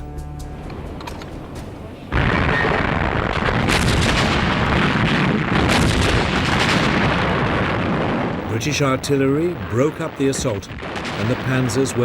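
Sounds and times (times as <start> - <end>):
shells bursting: 0.7 - 12.0
heavy guns firing: 2.1 - 8.9, 9.8 - 12.0.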